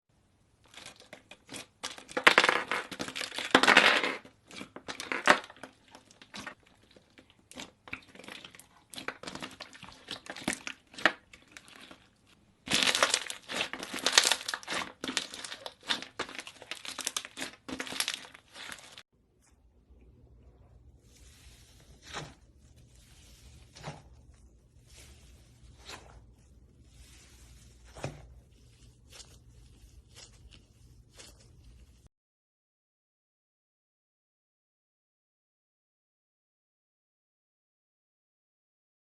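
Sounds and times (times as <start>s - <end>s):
slime crackling and popping: 0.7s - 19.0s.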